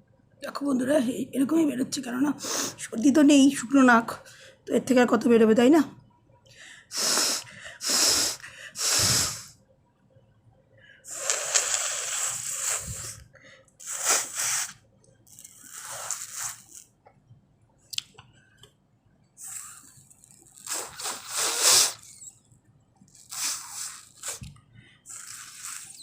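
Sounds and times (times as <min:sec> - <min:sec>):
woman blowing air through nose: 0:06.9 - 0:09.6, 0:11.1 - 0:13.2, 0:13.8 - 0:14.8, 0:15.6 - 0:16.8, 0:19.4 - 0:20.0, 0:20.6 - 0:22.3, 0:23.2 - 0:24.5, 0:25.1 - 0:26.0.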